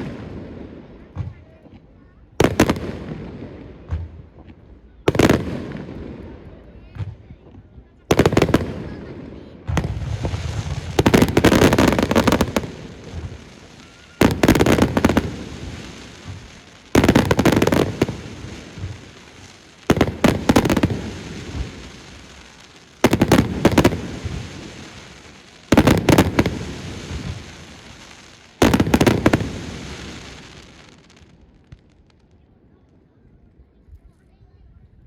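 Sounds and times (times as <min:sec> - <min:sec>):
fireworks bursting: 0:00.0 - 0:32.2.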